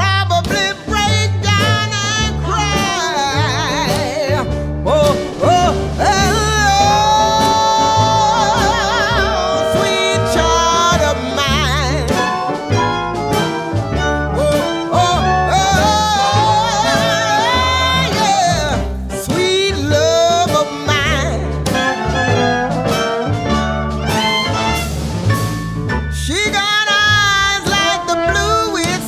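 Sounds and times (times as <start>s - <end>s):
person singing: 0.0s - 24.4s, 26.2s - 29.0s
walking bass beat: 0.0s - 29.0s
brass playing: 1.6s - 19.3s, 20.1s - 25.9s, 26.7s - 29.0s.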